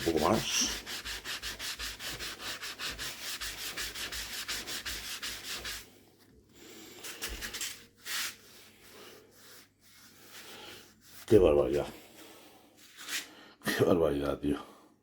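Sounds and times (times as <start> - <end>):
scrubbing on wood: 0.0 - 5.9.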